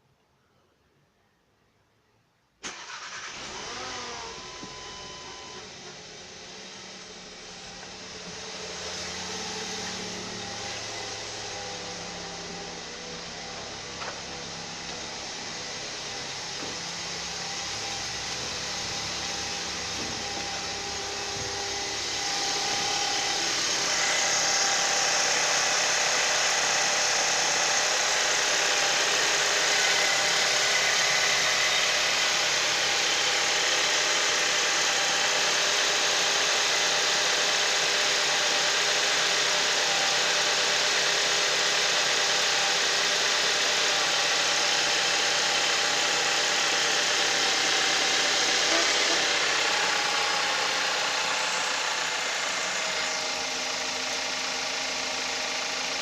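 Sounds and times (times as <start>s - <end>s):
car engine idling: 2.7s - 56.0s.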